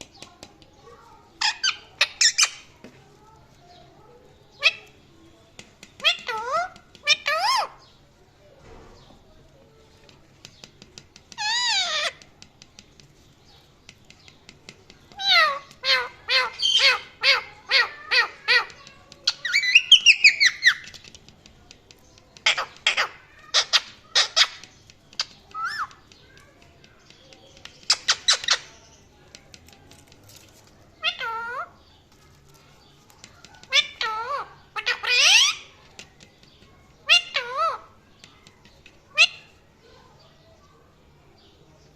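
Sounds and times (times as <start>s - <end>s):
parrot calling and chirping: 1.3s - 2.8s, 4.5s - 5.0s, 5.9s - 8.0s, 11.3s - 12.3s, 15.1s - 21.1s, 22.4s - 26.5s, 27.7s - 29.0s, 30.3s - 31.9s, 33.0s - 36.1s, 36.8s - 40.3s.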